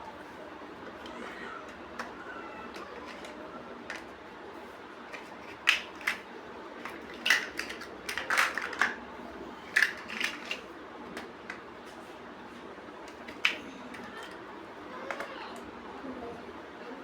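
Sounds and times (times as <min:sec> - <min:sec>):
plastic bricks clicking together: 0:05.1 - 0:06.2, 0:06.8 - 0:09.0, 0:09.7 - 0:10.6.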